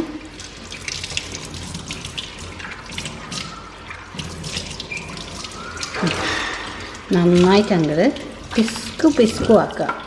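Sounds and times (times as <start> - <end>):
hands squelching marinade: 2.1 - 9.6.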